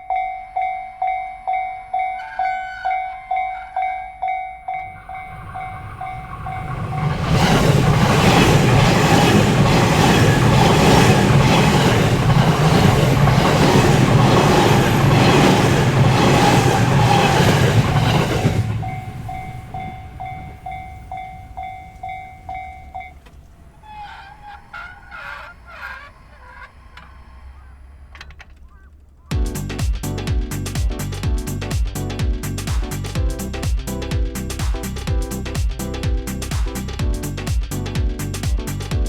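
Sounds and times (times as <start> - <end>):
level crossing bell clanging: 0.0 - 23.9
train wheels knocking over rail joints: 4.8 - 29.6.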